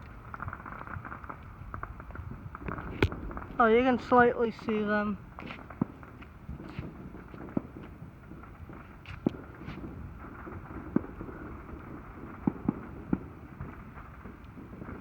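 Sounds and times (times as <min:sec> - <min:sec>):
outdoor hiss: 0:00.0 - 0:10.2
distant fireworks bangs: 0:00.0 - 0:15.0
fireworks hissing streaks: 0:02.5 - 0:12.8.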